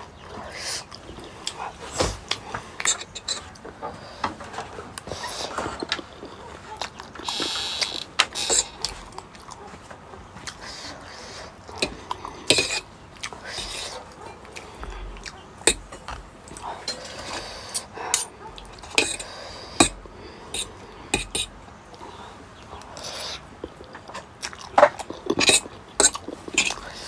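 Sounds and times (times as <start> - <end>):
cutlery clinking on a plate: 2.0 - 3.5, 11.8 - 12.9, 13.5 - 15.0, 15.7 - 20.0, 20.6 - 21.5, 24.8 - 27.0.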